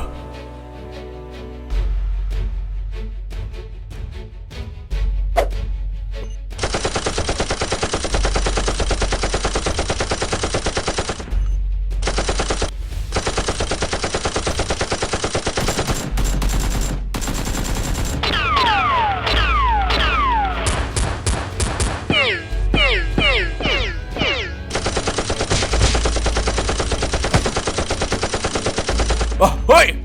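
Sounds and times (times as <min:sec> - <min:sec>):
automatic gunfire: 0:06.6 - 0:11.3, 0:12.1 - 0:20.1
music with low beat: 0:20.6 - 0:24.7.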